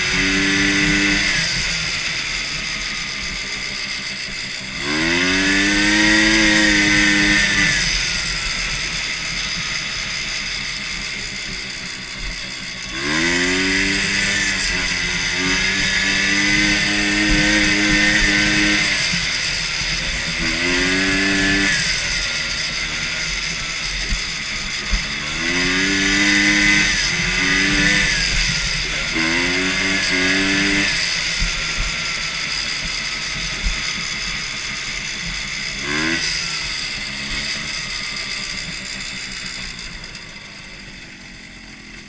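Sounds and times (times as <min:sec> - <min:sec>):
two-stroke engine revving: 0:00.0 - 0:42.0.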